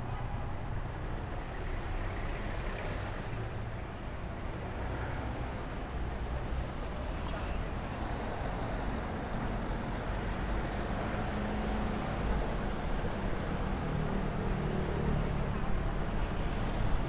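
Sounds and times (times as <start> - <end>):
traffic rumble: 6.8 - 17.0.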